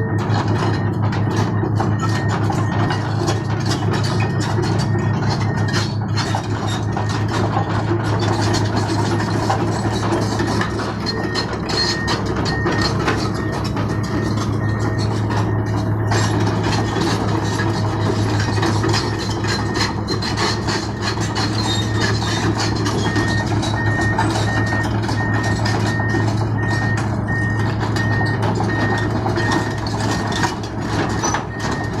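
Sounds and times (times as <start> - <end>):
excavator diesel engine running: 0.0 - 32.0
travel alarm beeping: 9.1 - 18.4, 21.3 - 30.4.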